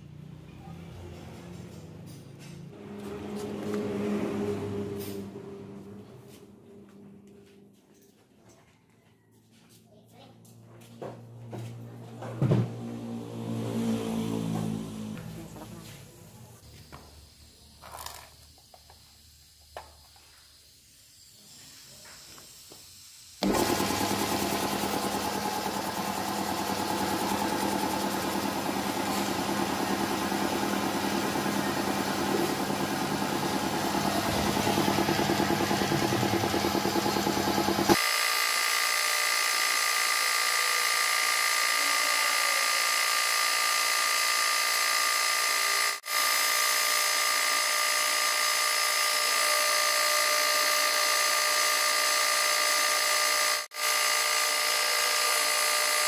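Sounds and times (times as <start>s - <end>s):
air compressor humming: 12.3s - 56.0s.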